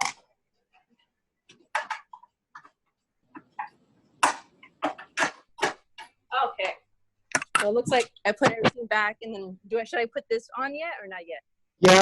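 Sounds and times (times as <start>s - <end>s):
plastic parts clicking and knocking: 0.0s - 8.1s.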